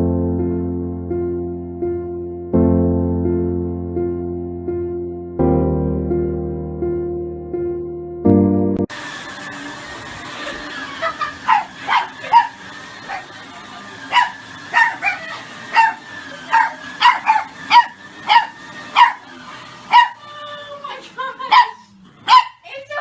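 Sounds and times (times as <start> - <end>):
dog barking: 11.4 - 13.3, 14.1 - 19.3, 19.9 - 20.2, 21.5 - 22.7.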